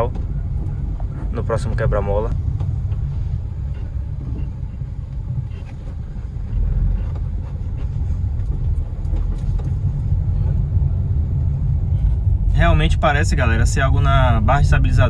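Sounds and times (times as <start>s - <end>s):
low road rumble: 0.0s - 15.0s
suspension knocking: 0.0s - 15.0s.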